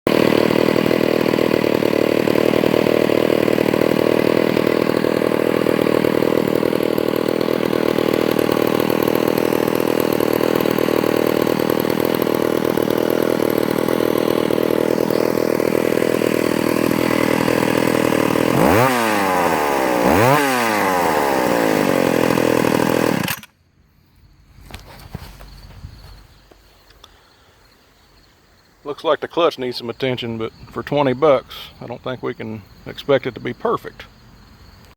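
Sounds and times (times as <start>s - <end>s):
chainsaw idling and revving: 0.1s - 23.6s.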